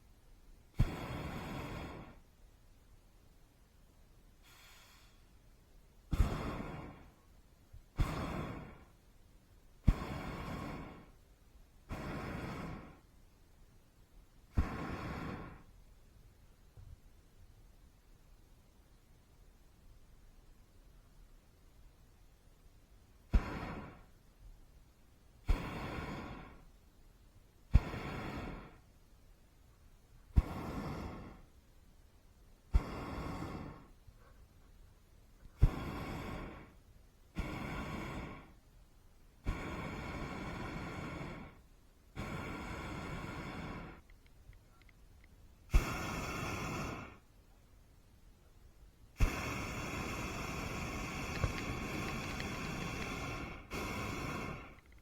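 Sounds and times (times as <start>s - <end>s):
propane burner roaring: 0.8s - 2.1s, 6.1s - 7.1s, 8.0s - 8.9s, 9.9s - 11.1s, 11.9s - 13.0s, 14.6s - 15.6s, 23.4s - 24.1s, 25.5s - 26.5s, 35.6s - 36.8s, 39.4s - 41.6s, 42.2s - 44.0s, 45.7s - 47.2s, 49.2s - 55.0s.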